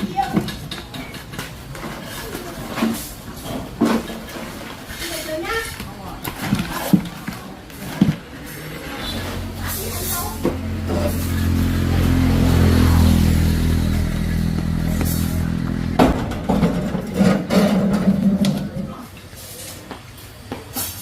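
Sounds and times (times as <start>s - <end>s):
small motorcycle engine running: 8.6s - 16.0s
knocks and clatter: 13.8s - 19.0s.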